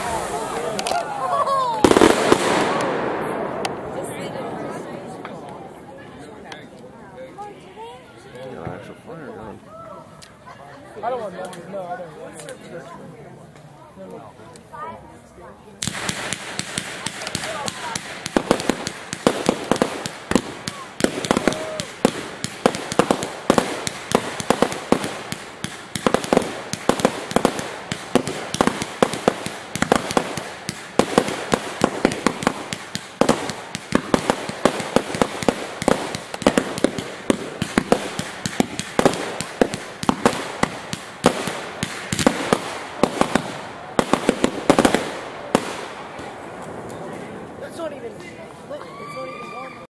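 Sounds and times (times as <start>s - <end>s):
fireworks bursts and bangs: 0.0s - 6.7s, 15.8s - 47.4s.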